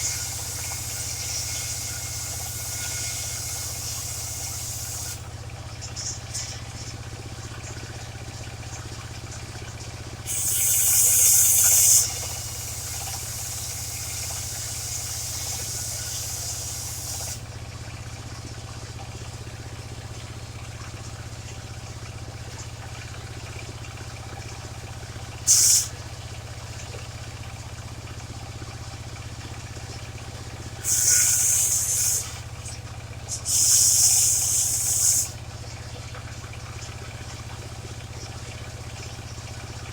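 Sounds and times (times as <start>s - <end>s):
loud hissing bursts: 0.0s - 5.2s, 10.3s - 17.4s, 25.5s - 25.9s, 30.8s - 32.4s, 33.4s - 35.4s
sawmill engine idling: 0.0s - 39.9s.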